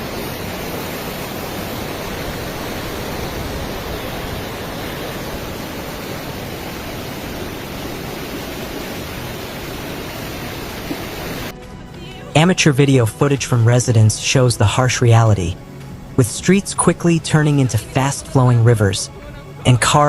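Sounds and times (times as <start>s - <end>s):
floodwater rushing: 0.0s - 11.5s.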